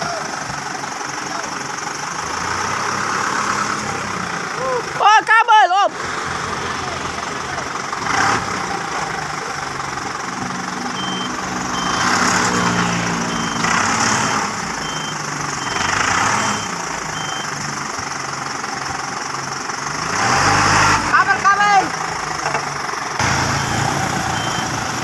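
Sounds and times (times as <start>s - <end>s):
truck engine revving: 0.0s - 25.0s
reversing alarm beeping: 10.9s - 13.8s, 14.8s - 17.6s, 23.2s - 25.0s.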